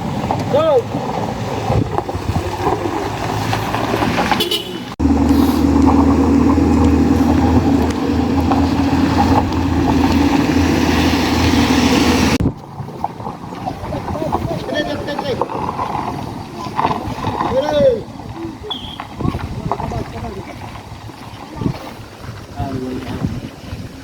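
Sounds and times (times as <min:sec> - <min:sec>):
vehicle noise: 0:00.0 - 0:24.0
bus horn blast: 0:04.3 - 0:05.9.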